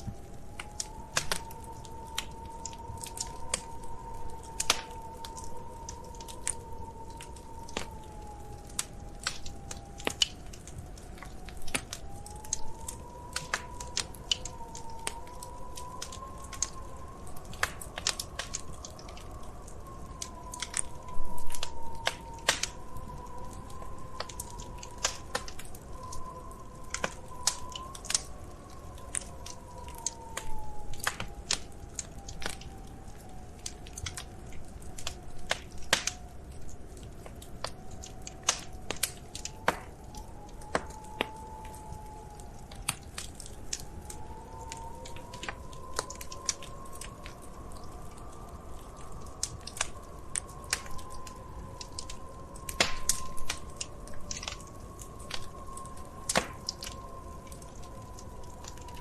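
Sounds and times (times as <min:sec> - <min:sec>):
wood fire crackling: 0:00.0 - 0:59.0
faint wavering hum: 0:36.2 - 0:59.0.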